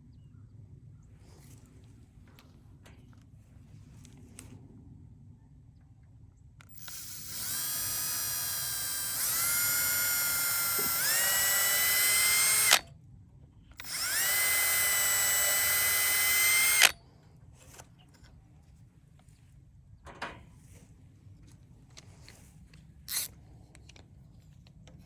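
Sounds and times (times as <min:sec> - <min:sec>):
electric drill motor whine: 0:06.7 - 0:12.9, 0:13.8 - 0:17.0, 0:23.1 - 0:23.3.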